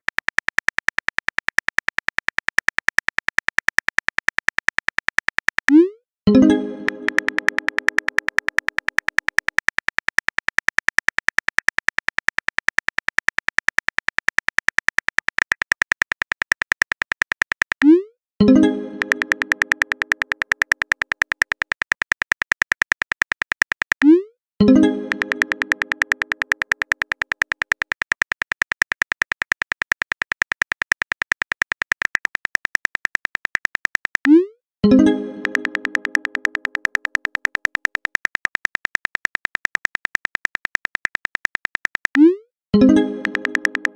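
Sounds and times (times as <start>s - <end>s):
rapid keyboard typing clicks: 0.0s - 18.0s, 18.6s - 43.9s.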